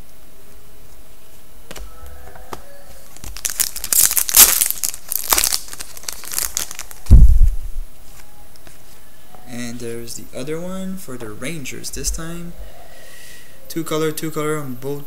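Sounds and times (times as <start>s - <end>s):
foil wrapper crinkling and tearing: 3.0s - 7.2s
short low thump: 7.1s - 7.8s.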